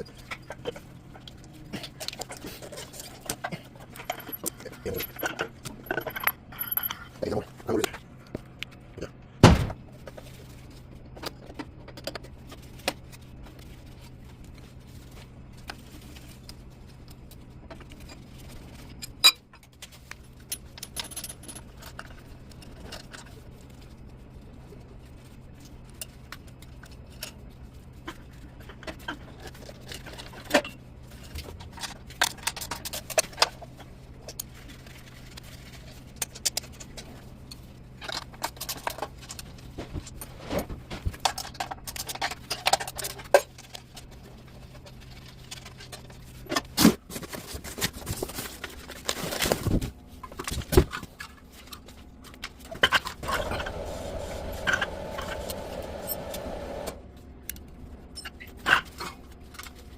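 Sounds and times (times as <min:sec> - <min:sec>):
steady low hum: 0:00.0 - 0:59.9
metal tools clinking and rattling: 0:02.0 - 0:07.9, 0:20.4 - 0:23.3.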